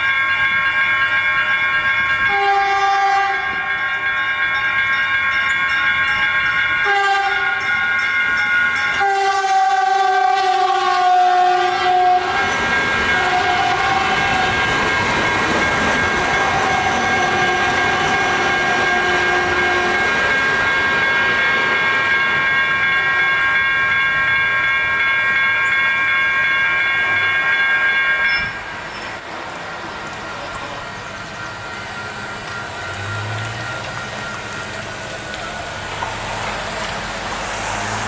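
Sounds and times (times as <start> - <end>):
crossing bells ringing: 0.0 - 38.0
train passing: 0.0 - 38.0
train horn blasts: 2.3 - 3.8, 6.8 - 7.8, 8.9 - 14.8, 16.1 - 20.2.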